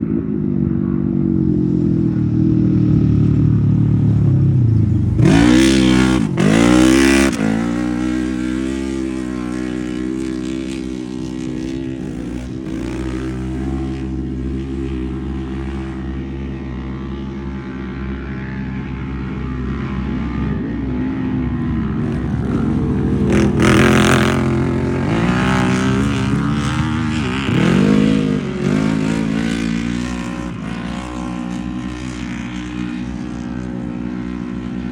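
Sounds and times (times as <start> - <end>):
utv engines revving: 0.0 - 34.9
loud rush of noise: 20.5 - 32.9.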